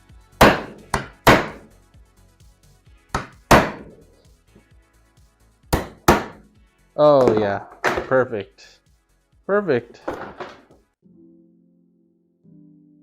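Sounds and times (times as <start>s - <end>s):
hammer striking plywood: 0.4s - 1.7s, 3.2s - 4.0s, 5.7s - 6.4s, 7.2s - 8.2s.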